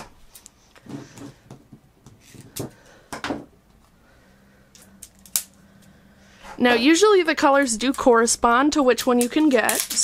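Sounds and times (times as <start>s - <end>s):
toys and plastic packaging handled: 9.1s - 10.0s.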